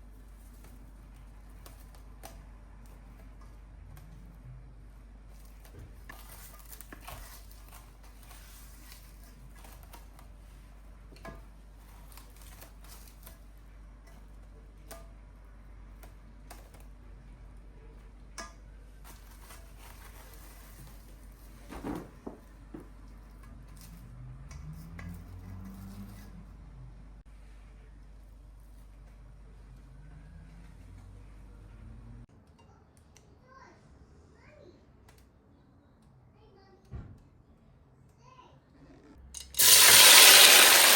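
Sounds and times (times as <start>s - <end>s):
objects clicking and knocking: 39.4s - 40.9s.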